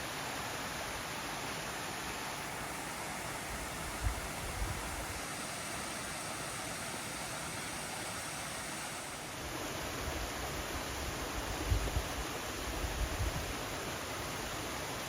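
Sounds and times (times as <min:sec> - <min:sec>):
steady rushing noise: 0:02.4 - 0:09.6.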